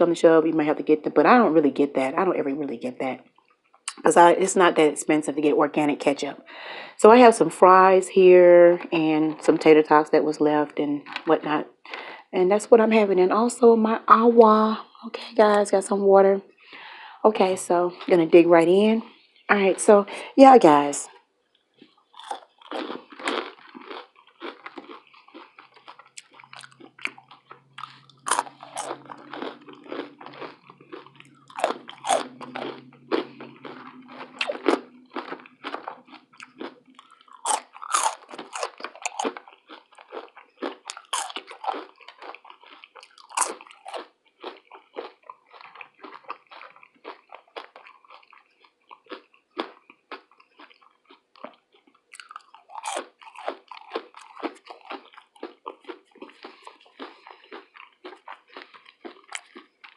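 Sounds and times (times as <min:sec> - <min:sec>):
person crunching fried food: 0:21.5 - 0:59.9.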